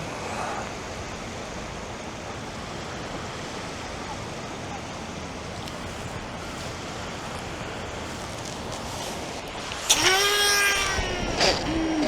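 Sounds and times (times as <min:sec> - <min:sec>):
surf washing on beach: 0:00.0 - 0:12.0
fishing rod cast crack: 0:08.4 - 0:12.0
fishing reel spool whining: 0:09.3 - 0:12.0.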